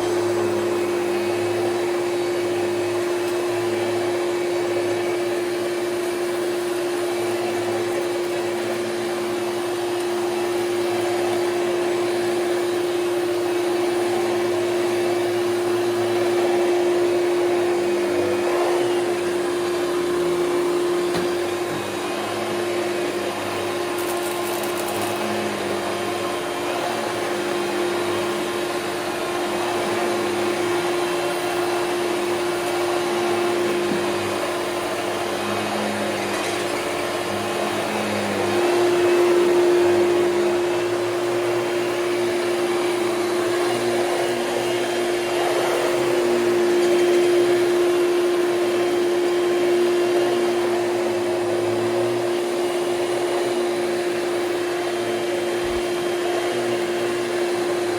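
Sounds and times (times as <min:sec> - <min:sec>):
vacuum cleaner running: 0:00.0 - 0:57.9.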